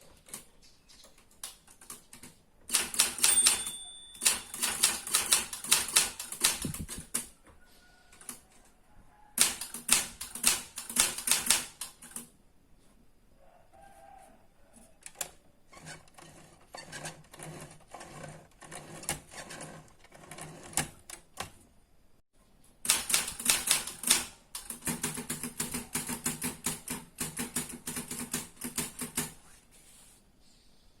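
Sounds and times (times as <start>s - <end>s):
manual typewriter typing: 1.4s - 7.3s, 9.4s - 12.3s, 22.9s - 29.4s.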